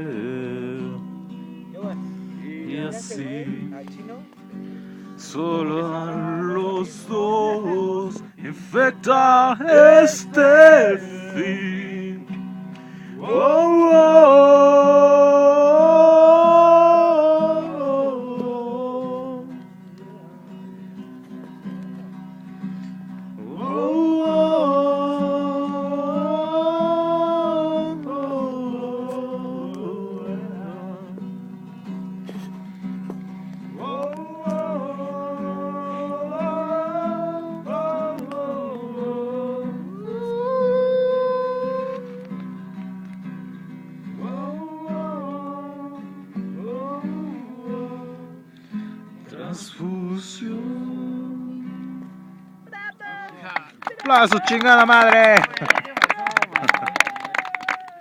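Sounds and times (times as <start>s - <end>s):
acoustic guitar: 0.0s - 57.0s
person singing long notes: 5.2s - 12.4s, 13.1s - 20.5s, 23.4s - 31.3s, 33.7s - 42.6s, 44.2s - 48.4s, 49.3s - 52.2s
person singing a long note: 23.4s - 31.2s, 33.8s - 42.4s.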